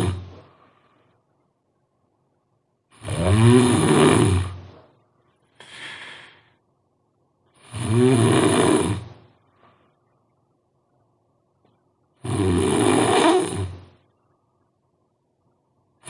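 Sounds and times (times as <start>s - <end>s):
person snoring loudly: 0.0s - 0.5s, 2.9s - 4.7s, 7.6s - 9.2s, 12.2s - 13.9s
soft breathy sound: 4.7s - 6.9s.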